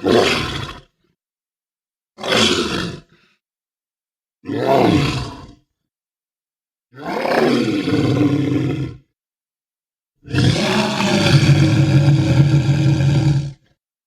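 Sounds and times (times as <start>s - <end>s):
elephant seal roaring: 4.5s - 5.6s, 7.0s - 9.1s, 10.2s - 13.7s.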